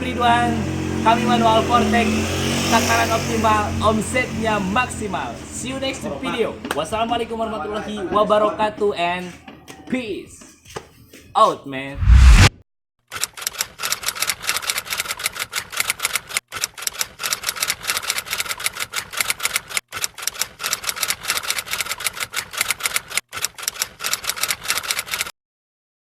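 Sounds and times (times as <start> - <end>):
rapid typewriter-like clicking: 13.2 - 25.3.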